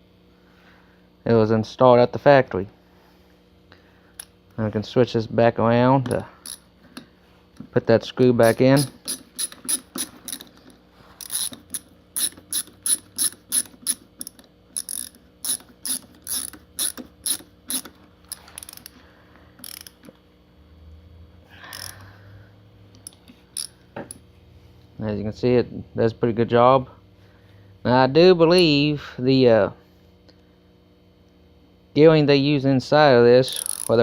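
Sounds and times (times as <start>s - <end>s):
ratchet screwdriver clicking: 6.1s - 6.6s, 8.4s - 19.0s, 19.6s - 20.2s, 21.7s - 22.0s, 23.0s - 24.2s, 33.5s - 34.0s.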